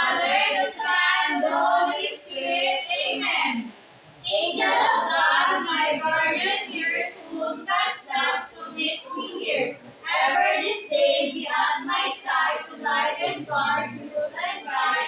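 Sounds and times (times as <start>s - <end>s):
children singing: 0.0s - 15.0s.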